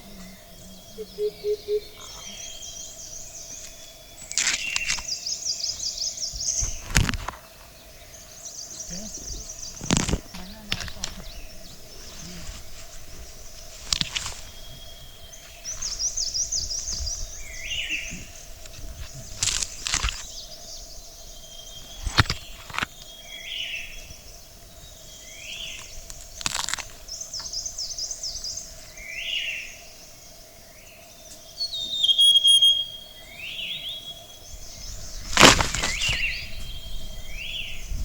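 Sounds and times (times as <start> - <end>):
faint steady hum: 0.0 - 4.4
small birds trilling and chirping: 0.0 - 38.0.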